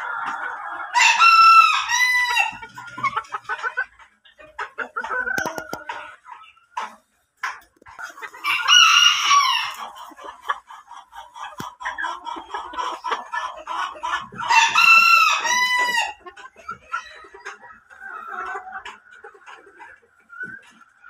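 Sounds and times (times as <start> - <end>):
hens clucking: 0.0 - 21.0
rooster crowing: 8.4 - 9.8.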